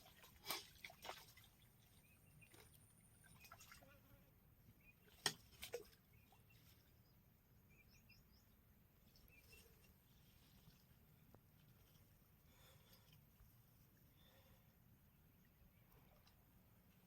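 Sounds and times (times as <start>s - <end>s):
faint bird chirps: 1.4s - 10.9s.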